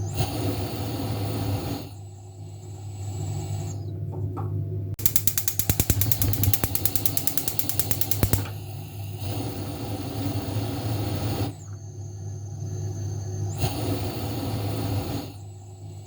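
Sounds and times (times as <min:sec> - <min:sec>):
stove spark igniter ticking: 0:05.0 - 0:08.5
gas burner hissing: 0:05.0 - 0:08.6.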